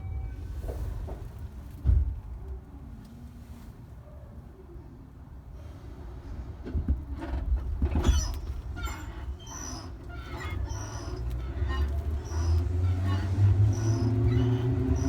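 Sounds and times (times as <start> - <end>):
train rumbling: 0.0 - 3.6, 5.5 - 15.0
short high squeaks: 8.0 - 15.0.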